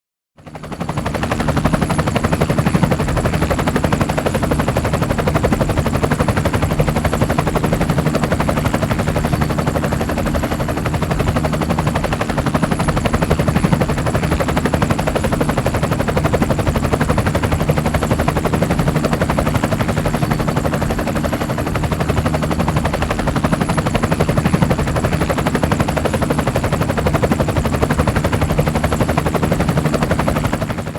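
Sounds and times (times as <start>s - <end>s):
helicopter rotor chopping: 0.4s - 30.9s.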